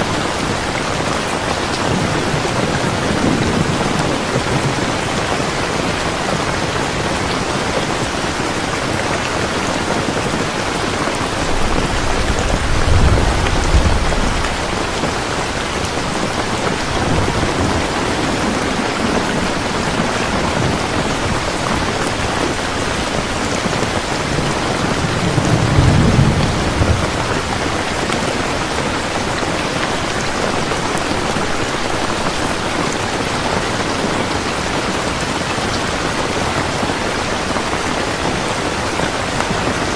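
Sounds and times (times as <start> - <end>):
heavy rain falling: 0.0 - 39.9
thunder rumbling: 0.1 - 8.7, 9.4 - 32.6.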